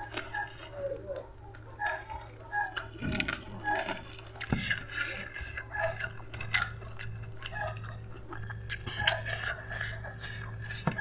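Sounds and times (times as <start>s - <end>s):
low steady hum: 0.0s - 11.0s
person chewing food: 0.0s - 11.0s.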